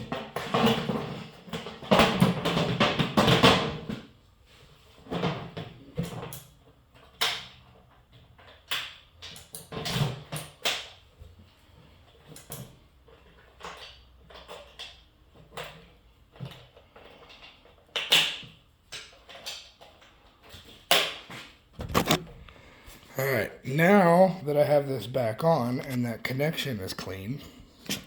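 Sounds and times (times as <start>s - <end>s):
clicks and clatter of parts handled: 12.0s - 22.6s.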